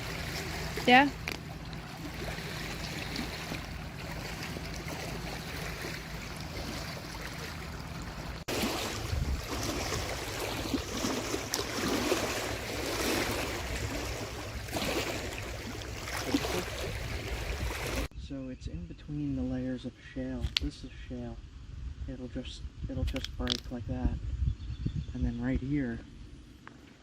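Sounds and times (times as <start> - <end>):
creek water rushing: 0.0 - 18.1
wind on microphone: 8.2 - 19.6, 20.4 - 26.5.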